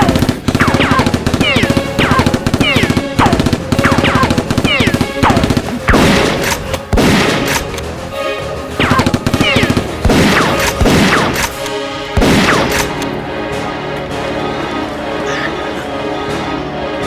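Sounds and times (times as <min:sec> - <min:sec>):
automatic gunfire sound effects: 0:00.0 - 0:07.8, 0:08.8 - 0:13.1
background music: 0:00.0 - 0:17.0.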